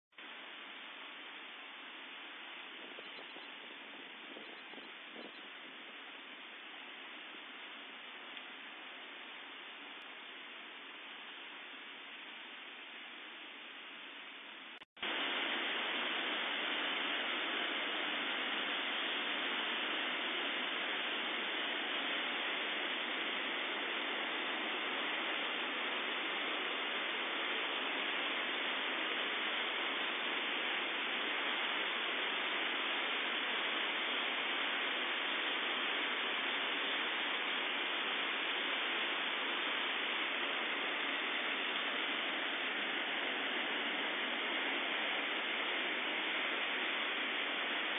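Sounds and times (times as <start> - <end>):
river rushing through rapids: 15.0 - 47.9.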